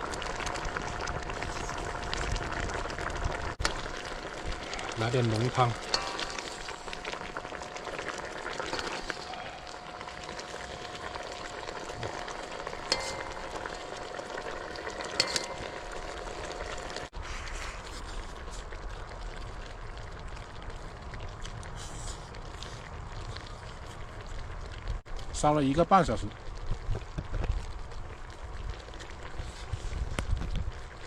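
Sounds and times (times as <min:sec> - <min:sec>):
stew bubbling in a pot: 0:00.0 - 0:31.0
ladle clinking against pot: 0:12.9 - 0:13.6, 0:15.1 - 0:15.8.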